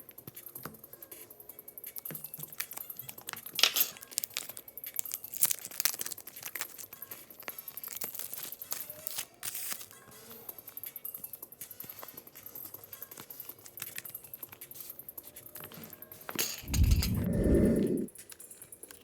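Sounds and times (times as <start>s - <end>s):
plastic wrapping tearing and crumpling: 4.0s - 9.9s.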